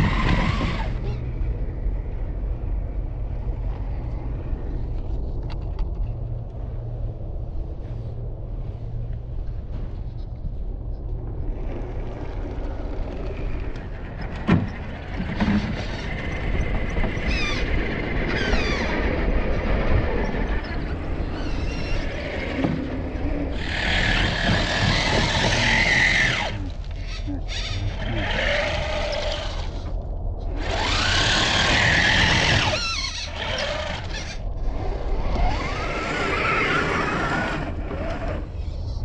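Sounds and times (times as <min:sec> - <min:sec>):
rc truck motors whining: 0:00.0 - 0:01.4, 0:11.5 - 0:39.0.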